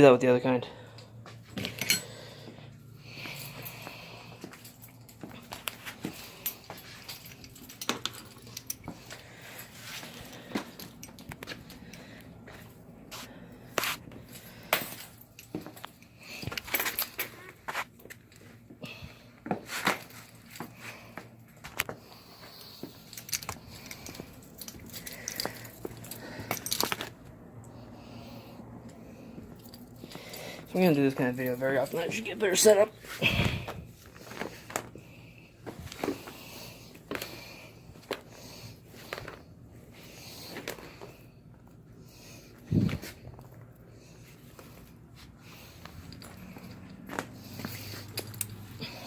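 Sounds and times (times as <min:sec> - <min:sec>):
small hardware clicking and rattling: 0:04.4 - 0:12.3, 0:22.6 - 0:27.2.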